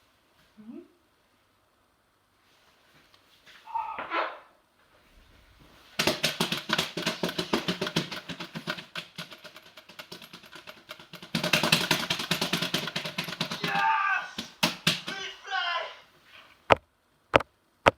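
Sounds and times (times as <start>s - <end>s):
small motor rattling: 6.0s - 15.2s.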